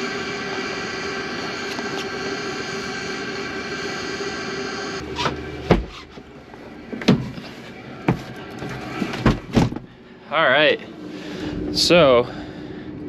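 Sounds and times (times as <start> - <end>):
diesel heater whine: 0.0 - 13.0.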